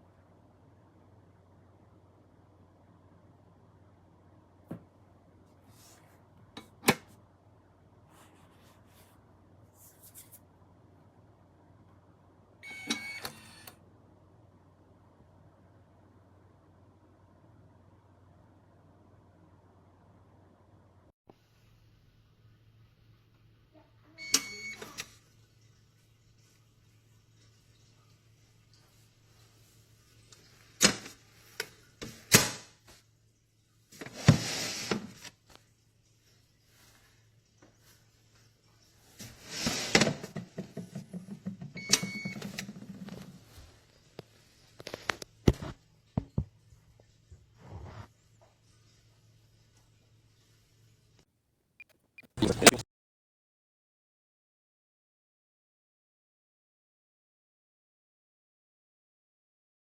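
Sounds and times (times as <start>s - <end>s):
short electronic tone: 52.2s - 52.8s.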